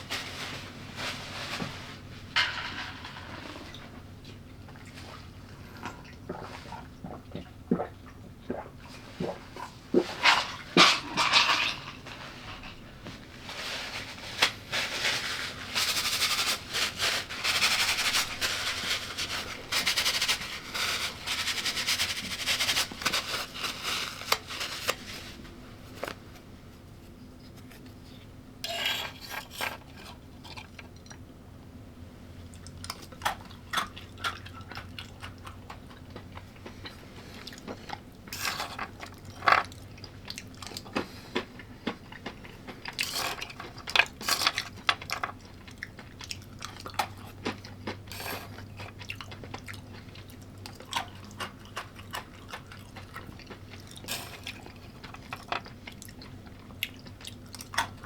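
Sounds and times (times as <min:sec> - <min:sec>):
cutlery scraping a dish: 0:28.6 - 0:30.2
quiet chewing: 0:32.4 - 0:58.0.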